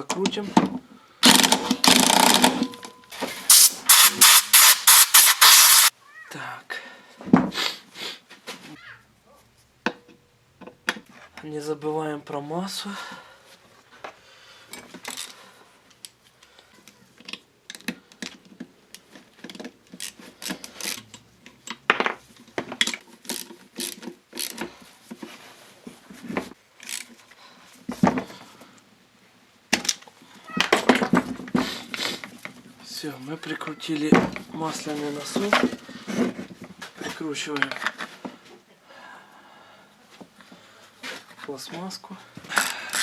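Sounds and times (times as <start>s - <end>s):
tools and metal parts clicking: 14.7s - 15.4s, 17.2s - 21.8s, 22.4s - 24.7s, 26.8s - 27.2s.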